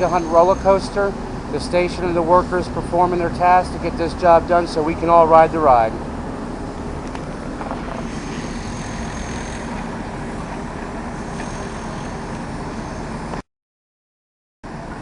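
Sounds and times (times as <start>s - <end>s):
faint high whine: 0.0s - 1.8s
machinery rumble: 0.0s - 13.4s.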